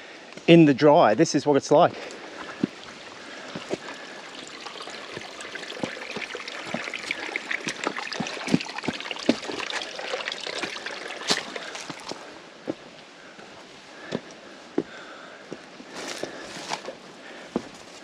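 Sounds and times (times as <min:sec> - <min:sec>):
footsteps on rocks: 0:01.8 - 0:04.0, 0:14.0 - 0:18.0.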